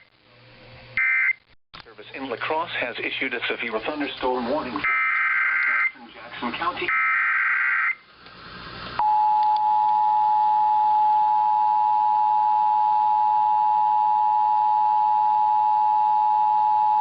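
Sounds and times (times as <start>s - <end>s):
faint radio hiss: 1.8s - 7.1s.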